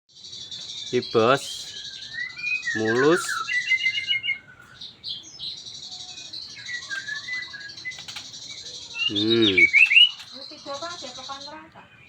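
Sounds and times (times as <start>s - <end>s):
songbird chirping and whistling: 0.2s - 12.0s
person's voice: 9.1s - 9.7s.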